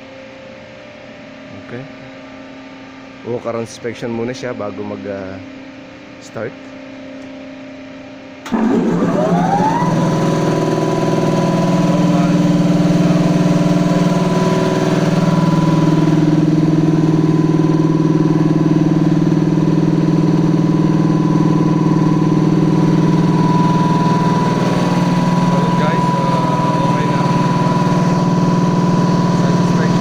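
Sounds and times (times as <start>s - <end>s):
air compressor motor running: 7.9s - 30.0s.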